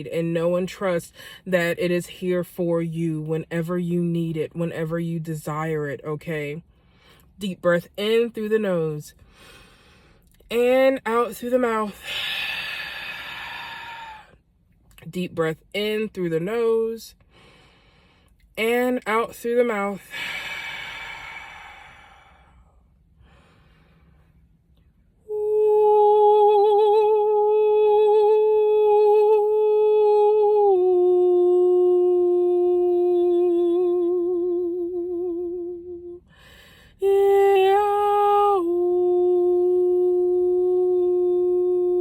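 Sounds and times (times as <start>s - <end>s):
woman humming and singing: 25.3s - 36.2s, 37.0s - 42.0s.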